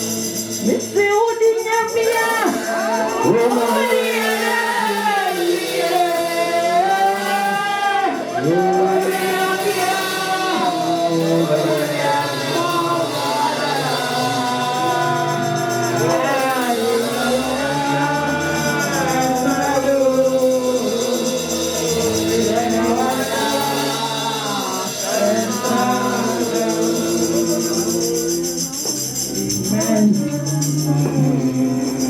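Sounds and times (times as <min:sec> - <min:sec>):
instrumental backing: 0:00.0 - 0:32.0
voices singing gospel song: 0:00.0 - 0:32.0.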